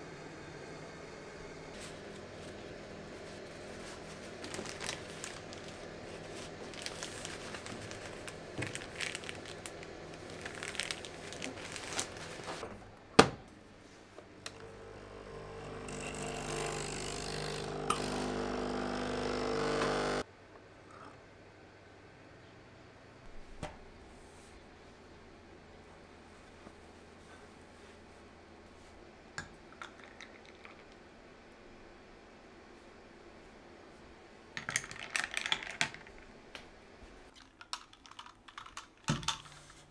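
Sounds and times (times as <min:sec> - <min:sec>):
appliance motor hum: 0:00.0 - 0:12.8, 0:14.2 - 0:20.3.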